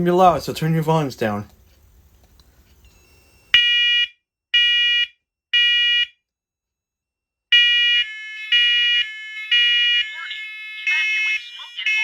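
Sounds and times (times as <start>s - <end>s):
smoke alarm beeping: 2.8s - 6.1s, 7.5s - 10.3s.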